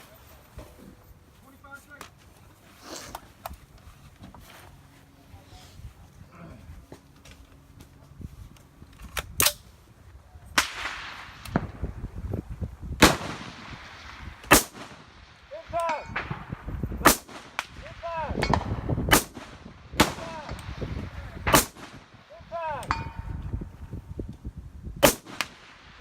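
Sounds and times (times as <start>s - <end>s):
rifle shots: 13.0s - 22.2s, 25.0s - 26.0s
gunshot echo rolling: 15.8s - 22.2s.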